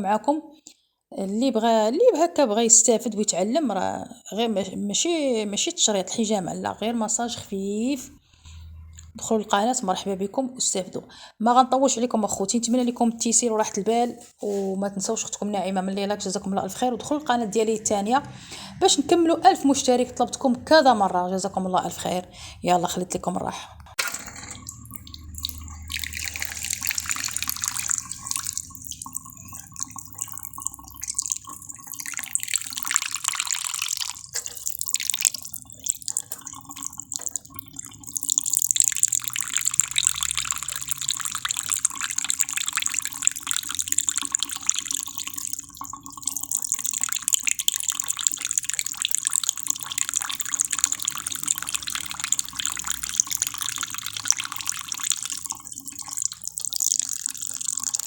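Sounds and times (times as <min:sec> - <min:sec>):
water trickling and splashing: 0:24.1 - 0:58.0.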